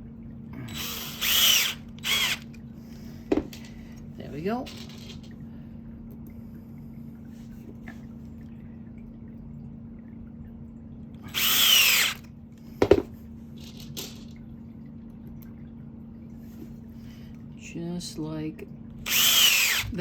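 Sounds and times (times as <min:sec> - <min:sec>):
faint steady hum: 0:00.0 - 0:20.0
power drill driving screw: 0:00.7 - 0:02.5, 0:11.3 - 0:12.2, 0:19.1 - 0:20.0.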